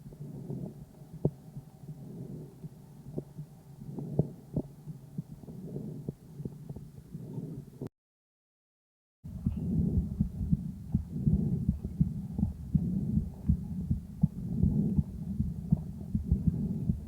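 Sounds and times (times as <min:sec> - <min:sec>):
breath noise through stethoscope: 0:00.0 - 0:07.9, 0:09.3 - 0:17.0
low hum: 0:09.3 - 0:17.0.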